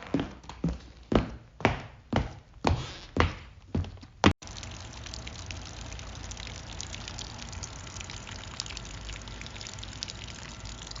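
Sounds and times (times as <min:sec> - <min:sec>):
water spattering: 0:04.4 - 0:11.0.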